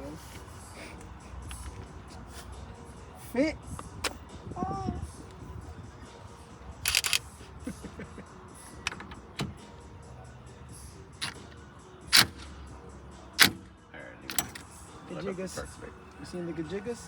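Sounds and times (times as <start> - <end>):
clicks and metallic knocks of tools: 6.8 - 7.2, 14.3 - 14.7.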